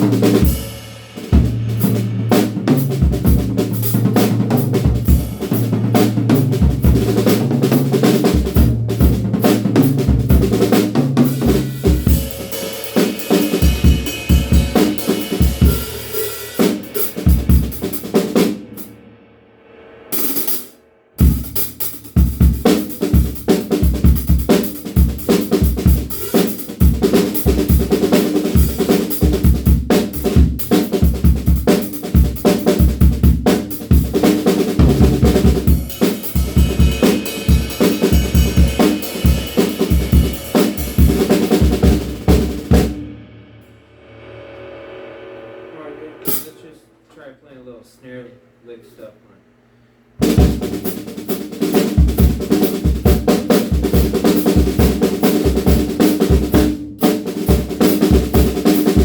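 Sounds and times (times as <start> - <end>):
cymbal wash: 0.0 - 8.8, 11.2 - 23.7, 33.6 - 51.6
drum kit playing: 0.0 - 49.1, 50.2 - 59.0.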